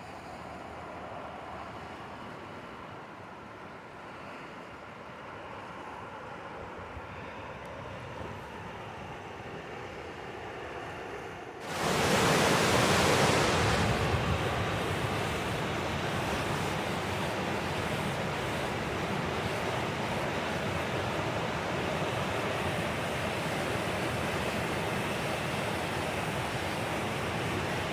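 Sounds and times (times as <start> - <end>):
wind: 0.0 - 27.9
rushing mountain stream: 11.6 - 27.9.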